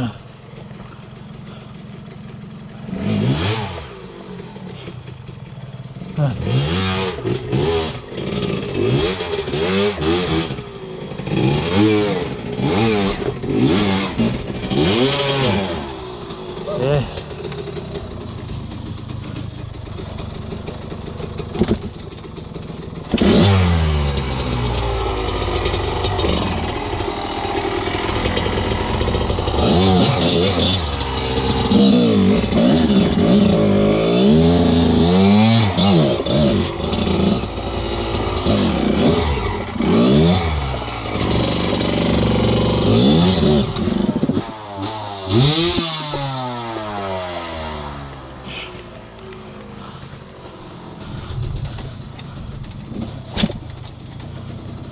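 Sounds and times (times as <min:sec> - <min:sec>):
dirt bike engine revving: 0:00.0 - 0:53.8.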